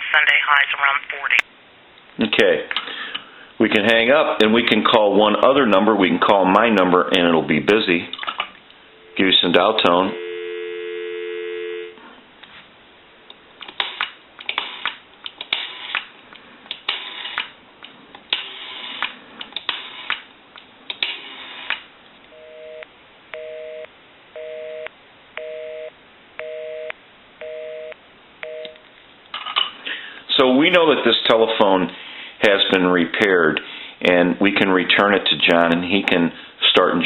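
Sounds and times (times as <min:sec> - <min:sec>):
two-tone busy signal beeps: 0:10.1 - 0:12.0, 0:22.4 - 0:28.8.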